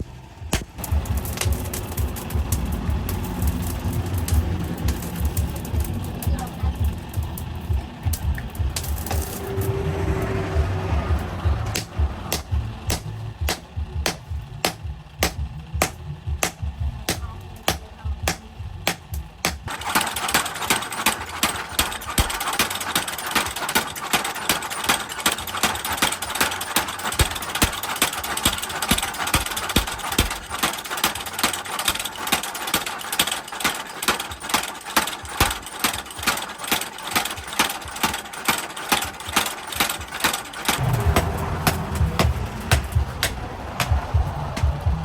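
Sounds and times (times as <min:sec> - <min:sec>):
rushing noise: 0:00.8 - 0:14.0, 0:40.8 - 0:45.0
hammer on steel: 0:11.1 - 0:45.0.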